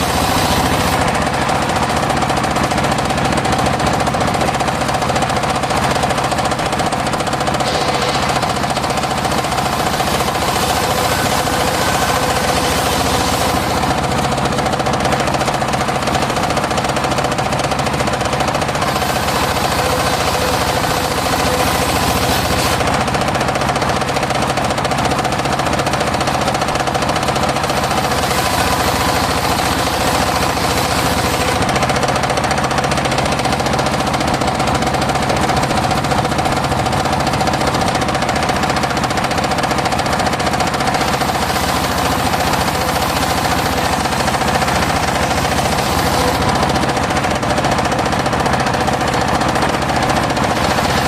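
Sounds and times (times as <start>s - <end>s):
circular sawmill engine running: 0.0s - 51.0s
saw cutting wood: 0.0s - 51.0s.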